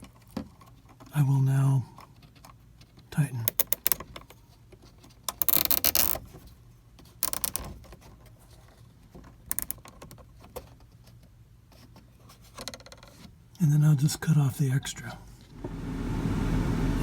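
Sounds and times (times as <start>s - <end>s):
zip tie ratchet clicking: 5.4s - 6.2s.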